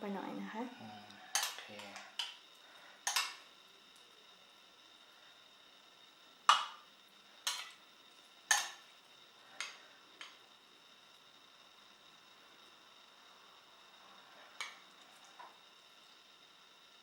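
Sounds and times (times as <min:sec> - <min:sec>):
utensils clinking against dishes: 0:01.3 - 0:02.3, 0:03.1 - 0:03.4, 0:07.5 - 0:07.8, 0:08.5 - 0:08.8.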